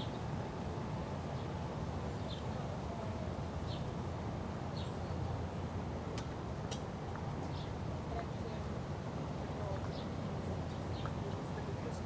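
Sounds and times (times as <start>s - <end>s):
traffic rumble: 8.4s - 12.0s.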